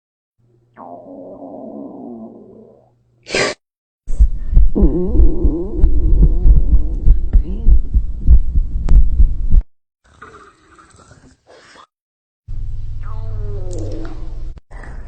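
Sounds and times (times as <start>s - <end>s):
stomach growling: 0.8s - 2.9s, 4.7s - 7.8s.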